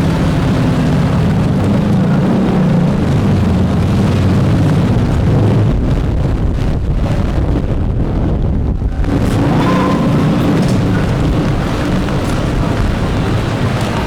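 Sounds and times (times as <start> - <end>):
traffic hum: 0.0 - 14.0
vehicle engine rumble: 0.0 - 14.0.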